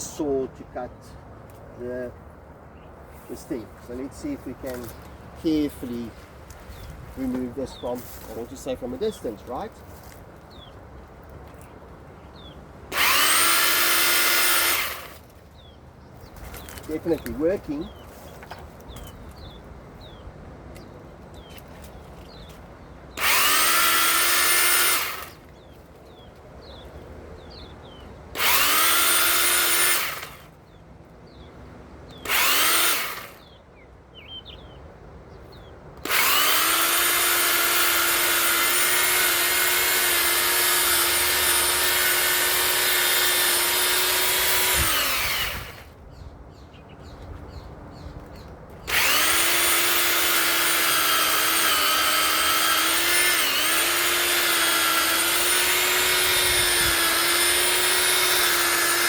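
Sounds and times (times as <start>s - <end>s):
electric pole saw motor whining: 12.9s - 15.4s, 23.2s - 25.6s, 28.3s - 30.6s, 32.2s - 33.5s, 36.0s - 46.0s, 48.9s - 59.0s.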